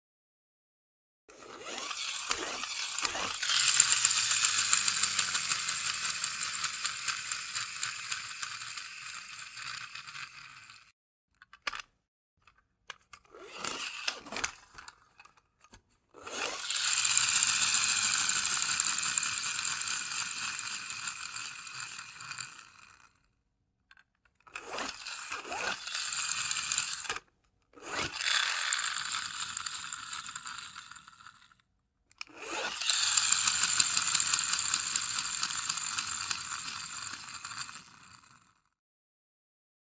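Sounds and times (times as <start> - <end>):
toy car motor whining: 1.4 - 10.9, 13.1 - 15.0, 16.2 - 23.1, 24.5 - 31.6, 32.2 - 38.5.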